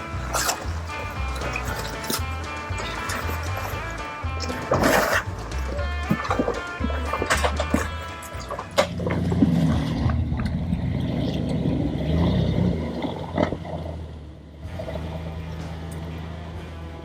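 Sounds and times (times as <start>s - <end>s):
engine running at low revs: 0.0s - 17.0s.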